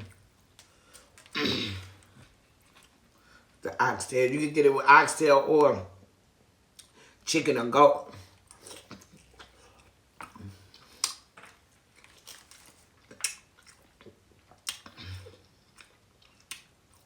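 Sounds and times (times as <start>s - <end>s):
person chewing with mouth smacks: 0.0s - 3.2s, 8.2s - 17.0s
person humming mm: 10.4s - 10.7s.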